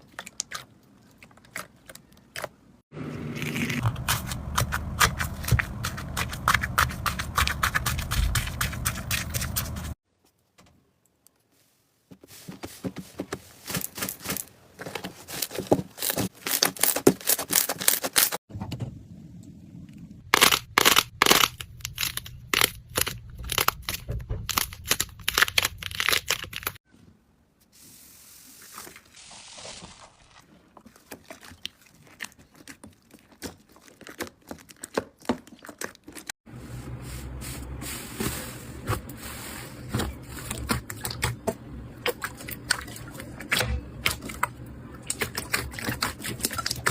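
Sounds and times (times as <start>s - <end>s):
slime crackling and popping: 20.4s - 26.8s.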